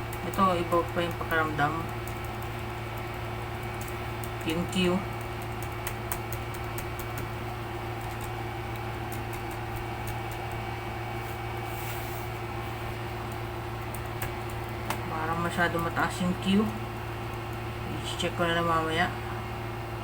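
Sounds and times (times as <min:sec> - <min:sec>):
low electrical hum: 0:00.0 - 0:20.0
laptop keyboard keys clicking: 0:00.1 - 0:04.5, 0:05.1 - 0:10.6.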